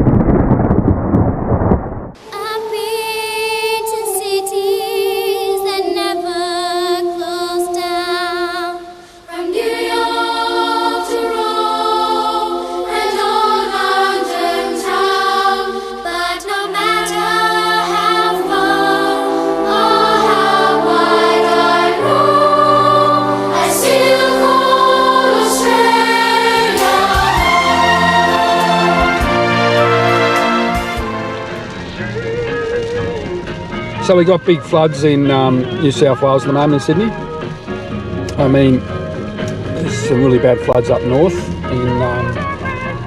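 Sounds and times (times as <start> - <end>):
low bass part: 0.0 - 2.2, 18.3 - 43.0
choir singing held notes: 2.2 - 43.0.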